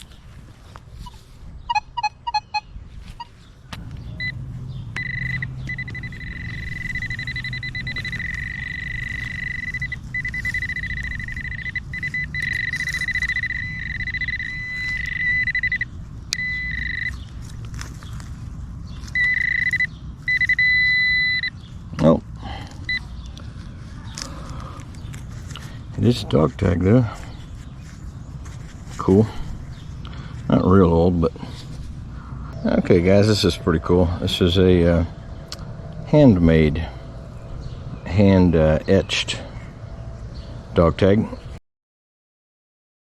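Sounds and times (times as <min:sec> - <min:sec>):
metal detector beeps: 0:01.0 - 0:03.3, 0:05.0 - 0:17.2, 0:19.0 - 0:21.6, 0:22.8 - 0:23.1, 0:32.5 - 0:35.2
metal detector high-pitched tone: 0:01.0 - 0:03.3, 0:05.0 - 0:17.2, 0:19.1 - 0:21.5, 0:32.5 - 0:35.1.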